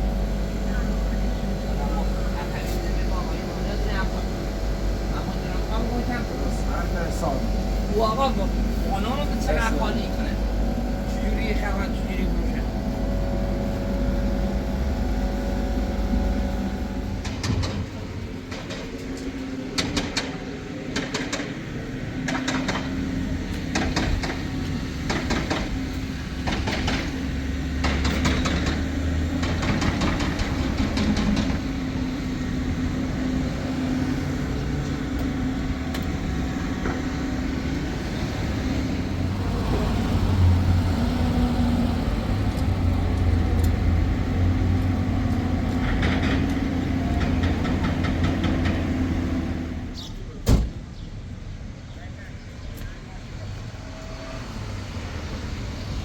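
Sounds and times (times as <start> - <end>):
engine humming: 0.0 - 56.0
sharp clicks and knocks: 17.2 - 21.6, 22.2 - 31.8, 44.8 - 49.2.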